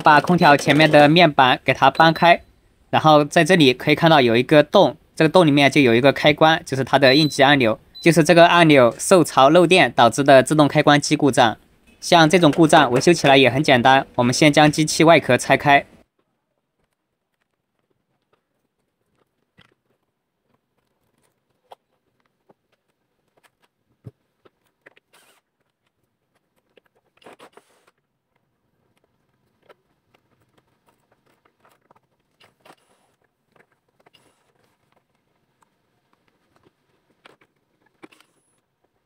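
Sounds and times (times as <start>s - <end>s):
plastic scraping rustle: 16.1s - 39.0s.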